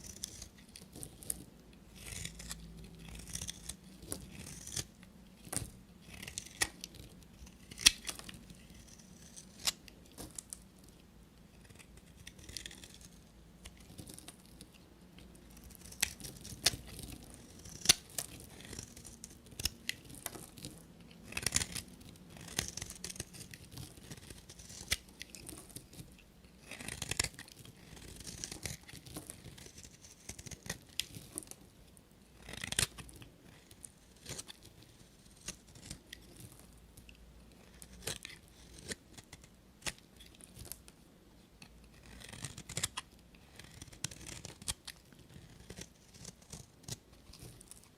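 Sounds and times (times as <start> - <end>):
knife cutting through soap: 2.0 - 4.9, 5.5 - 10.6, 15.6 - 26.0, 26.6 - 31.5, 41.9 - 47.8.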